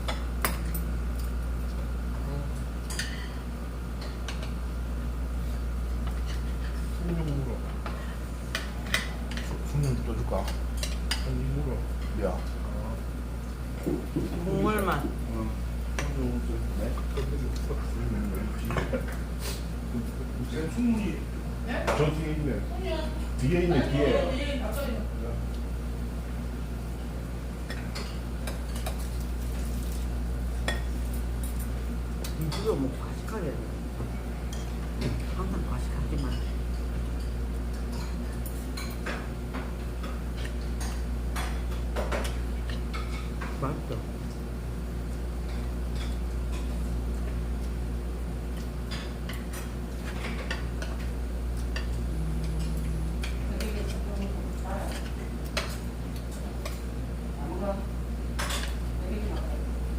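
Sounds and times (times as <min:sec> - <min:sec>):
steady low hum: 0:00.0 - 0:59.9
cutlery clinking against dishes: 0:02.8 - 0:03.4, 0:58.4 - 0:58.8.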